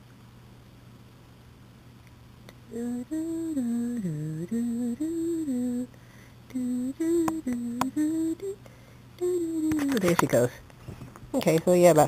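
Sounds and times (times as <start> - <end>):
person humming: 2.6 - 10.4.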